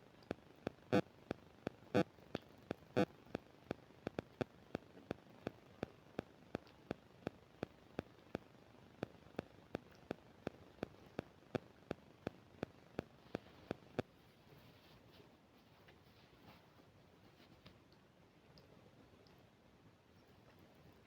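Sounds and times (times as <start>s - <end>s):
microphone static clicks: 0.0s - 14.1s.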